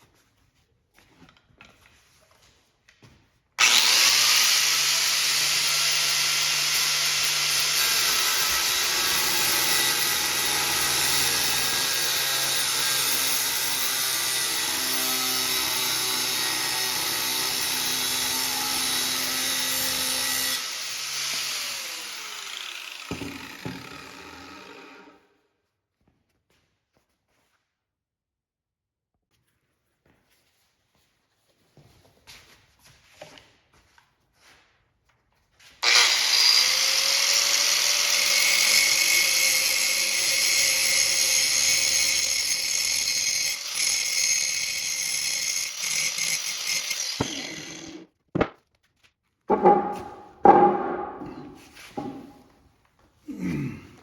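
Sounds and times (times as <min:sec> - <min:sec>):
power tool cutting metal: 0:03.6 - 0:25.2, 0:35.8 - 0:48.1.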